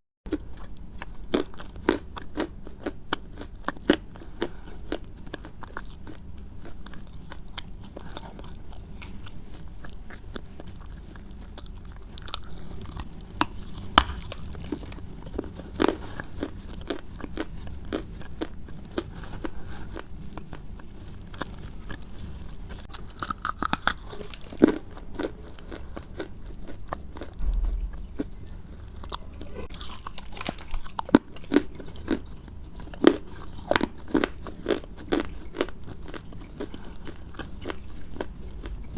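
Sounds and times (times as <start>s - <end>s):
crunchy chewing of crisp food: 0.3s - 38.9s.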